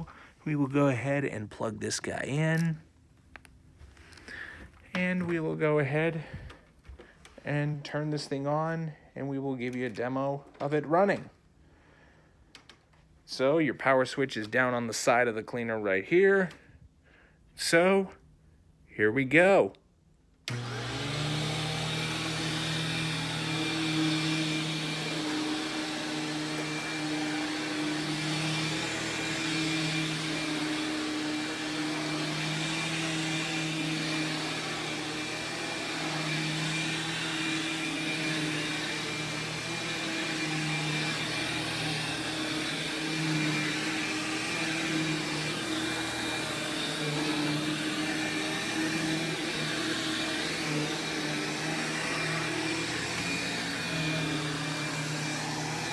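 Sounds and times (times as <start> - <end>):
upright vacuum cleaner running: 20.5 - 55.9.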